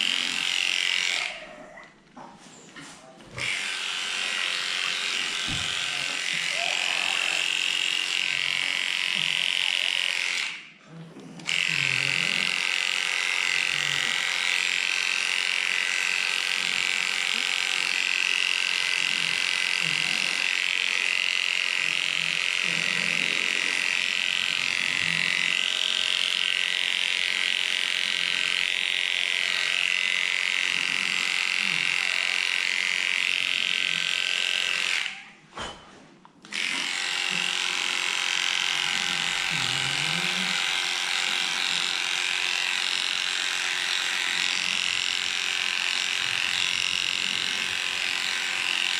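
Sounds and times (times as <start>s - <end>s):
electric clipper running: 0.0s - 1.5s, 3.3s - 35.3s, 36.4s - 48.9s.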